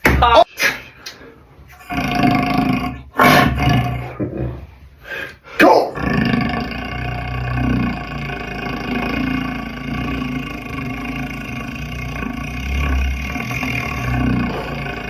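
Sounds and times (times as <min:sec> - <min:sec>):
beatboxer imitating lion growl: 0:01.8 - 0:04.2, 0:05.8 - 0:15.0.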